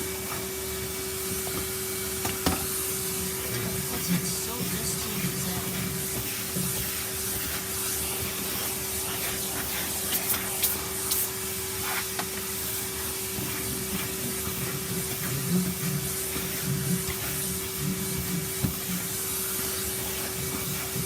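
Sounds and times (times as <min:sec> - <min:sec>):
vacuum cleaner running: 0:00.0 - 0:21.0.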